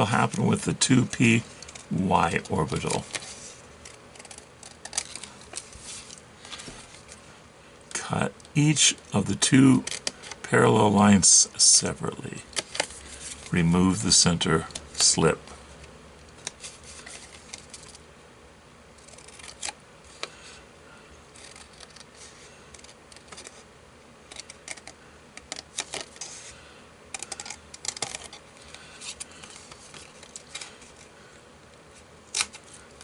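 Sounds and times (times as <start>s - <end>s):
scissors snipping paper: 1.6s - 5.3s, 19.0s - 19.8s, 21.4s - 23.6s.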